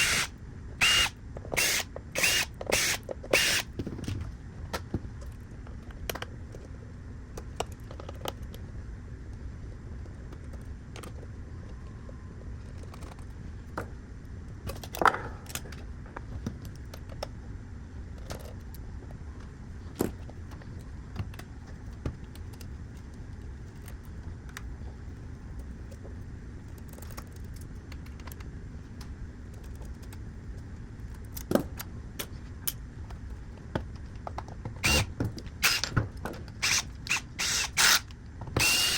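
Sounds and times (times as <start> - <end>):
steady low hum: 0.0 - 7.8, 8.4 - 38.9
light clicks of casing parts: 19.4 - 24.7, 25.5 - 34.7.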